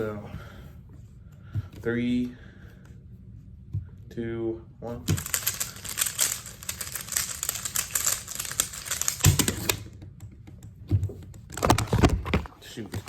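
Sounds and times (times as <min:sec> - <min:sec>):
plastic puzzle cube clicking: 0:05.1 - 0:09.9.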